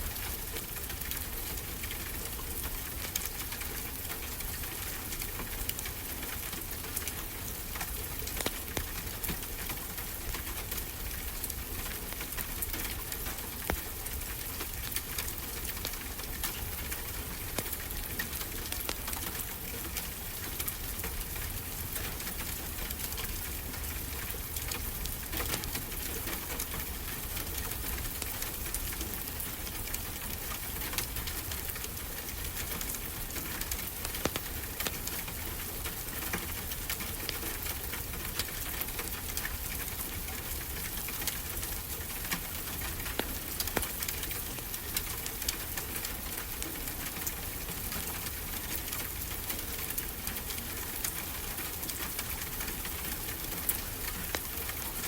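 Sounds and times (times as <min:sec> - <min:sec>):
wood fire crackling and popping: 0:07.8 - 0:10.5, 0:12.1 - 0:21.0, 0:30.3 - 0:47.4.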